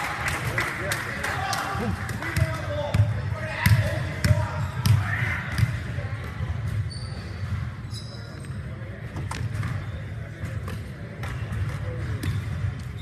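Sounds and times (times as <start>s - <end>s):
hum of hall and crowd: 0.0s - 13.0s
basketball bouncing on court: 2.3s - 7.7s, 9.2s - 13.0s
sneakers squeaking on floor: 6.6s - 10.6s, 11.4s - 13.0s.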